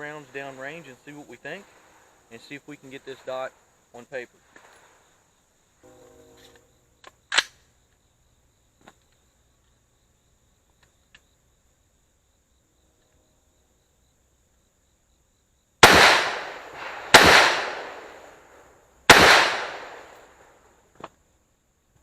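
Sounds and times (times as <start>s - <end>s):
rifle shots echoing: 15.8s - 20.4s.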